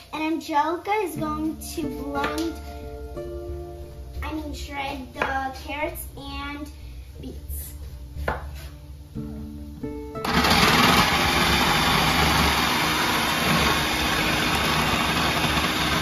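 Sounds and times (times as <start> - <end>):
food processor motor shredding: 10.2 - 16.0.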